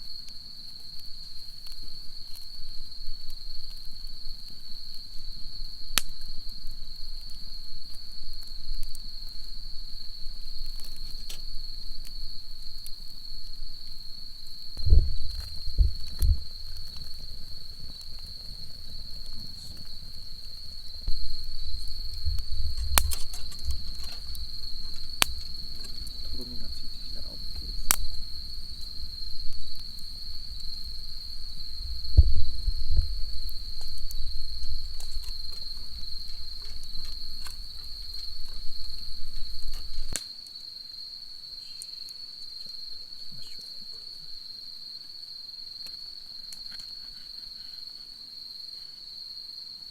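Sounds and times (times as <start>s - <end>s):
night insects trilling: 0.0s - 49.9s
low rumble: 14.8s - 40.1s.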